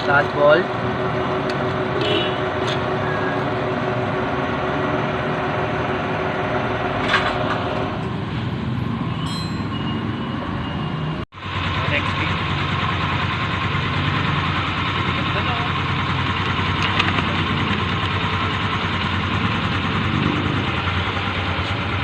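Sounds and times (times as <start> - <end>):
mechanical drone: 0.6 - 8.1
hand tools clinking on metal: 9.3 - 9.8.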